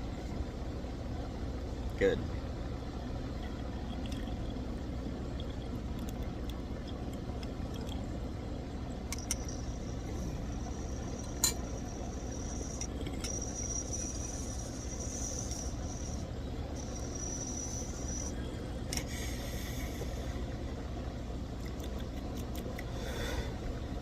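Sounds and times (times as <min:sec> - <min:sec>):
low background hum: 0:00.0 - 0:24.0
thin high whistle: 0:09.2 - 0:18.4.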